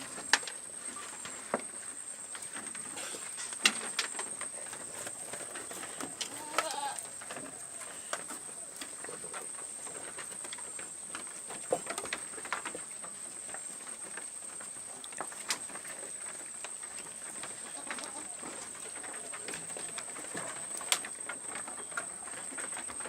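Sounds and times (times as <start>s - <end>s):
goat hoof clicks and knocks: 0.0s - 23.0s
goats bleating: 6.2s - 7.2s.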